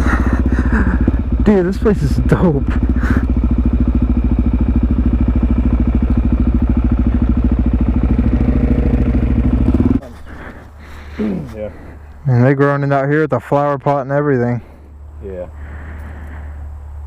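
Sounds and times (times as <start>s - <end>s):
motorcycle engine idling: 0.0s - 12.2s.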